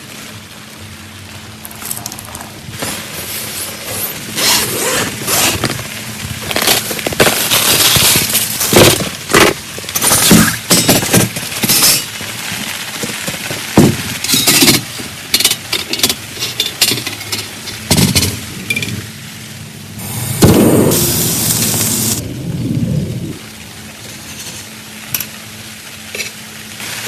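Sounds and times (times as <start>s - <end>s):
steady hiss: 0.0s - 27.0s
camping gear rustling and clattering: 1.6s - 12.2s.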